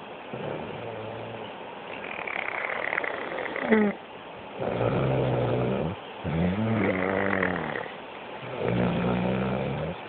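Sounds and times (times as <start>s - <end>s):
deep snoring: 4.6s - 10.0s.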